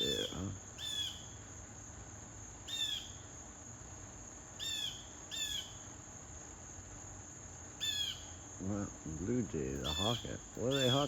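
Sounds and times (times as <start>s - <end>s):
harsh bird calls: 0.0s - 1.4s, 9.8s - 11.0s
insects droning: 0.0s - 11.0s.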